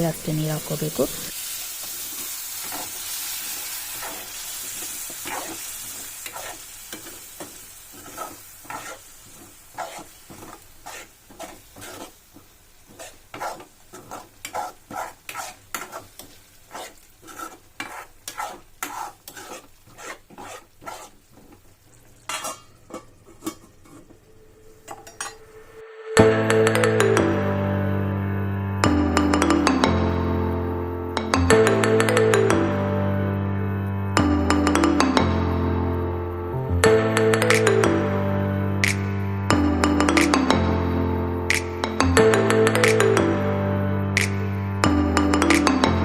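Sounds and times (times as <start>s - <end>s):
spices sizzling in oil: 0.0s - 25.7s
spoon scraping pan: 3.9s - 25.5s.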